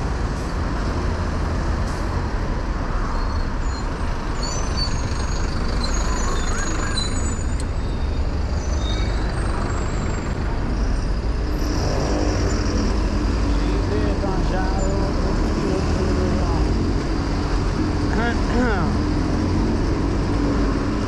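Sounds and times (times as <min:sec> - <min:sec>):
traffic engines and road noise: 0:00.0 - 0:21.0
short high squeaks: 0:03.1 - 0:12.6.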